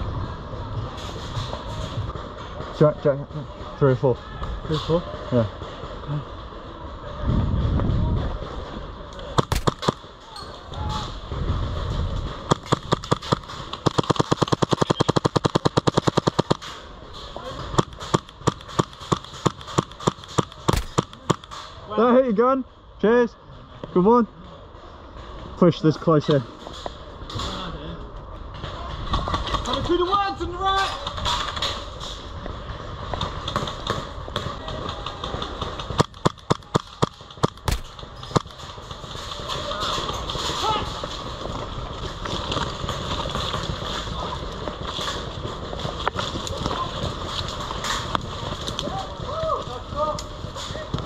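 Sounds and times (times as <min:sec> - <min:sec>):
airsoft gun firing: 0:09.4 - 0:10.0, 0:12.5 - 0:16.7, 0:17.6 - 0:21.6, 0:35.9 - 0:38.6.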